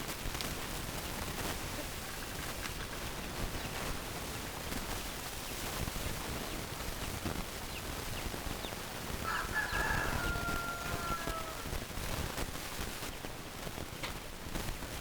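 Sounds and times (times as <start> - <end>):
rooster crowing: 9.2 - 11.8.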